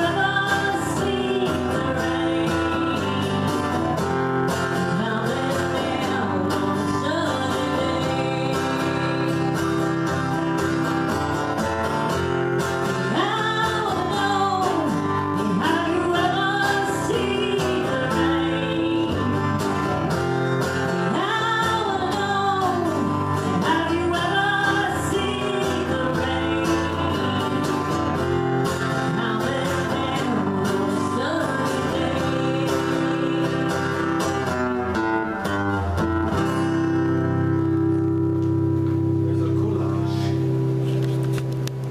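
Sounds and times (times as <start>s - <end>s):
person singing: 0.0s - 3.9s, 4.7s - 10.0s, 13.1s - 19.8s, 21.1s - 34.6s
acoustic guitar strumming: 0.0s - 41.9s.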